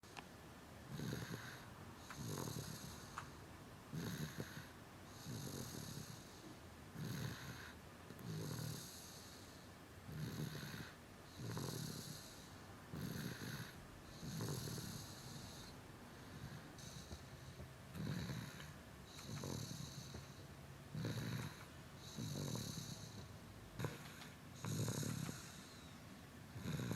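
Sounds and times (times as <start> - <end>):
child snoring loudly: 0.9 - 3.1, 3.9 - 6.4, 7.0 - 9.4, 10.1 - 15.7, 18.0 - 20.2, 20.9 - 25.7, 26.6 - 26.9.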